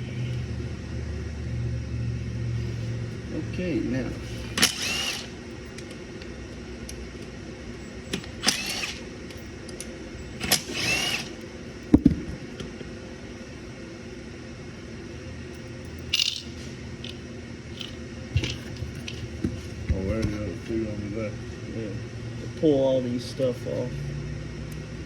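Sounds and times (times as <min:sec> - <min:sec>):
steady shop hum: 0:00.0 - 0:25.0
small power tool whining: 0:04.4 - 0:05.4, 0:08.2 - 0:09.1, 0:10.4 - 0:11.4.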